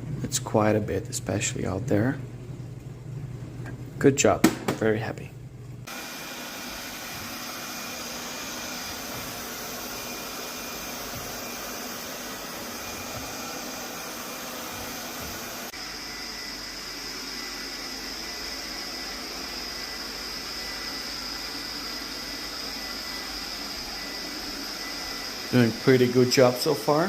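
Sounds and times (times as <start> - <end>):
robot vacuum whirring: 5.9 - 27.0.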